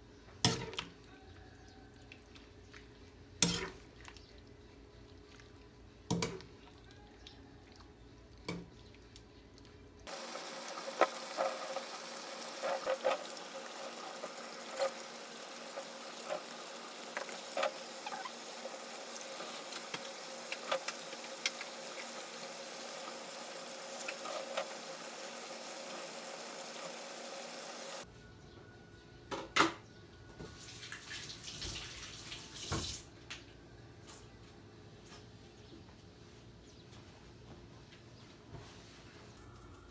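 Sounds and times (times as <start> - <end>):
tap running into a sink: 32.6 - 33.0.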